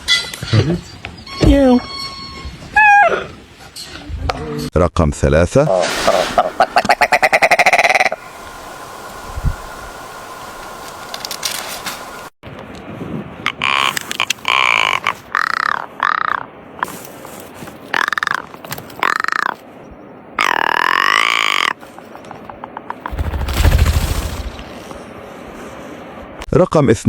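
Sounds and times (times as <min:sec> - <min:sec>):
animal calling: 0:02.7 - 0:03.4, 0:06.0 - 0:08.4.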